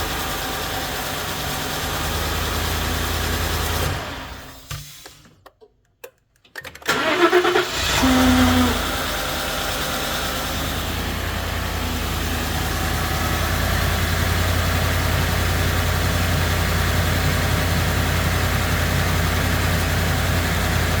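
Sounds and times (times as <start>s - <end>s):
truck engine cranking and idling: 0.0s - 4.7s, 6.6s - 21.0s
engine start-up whine: 6.9s - 21.0s.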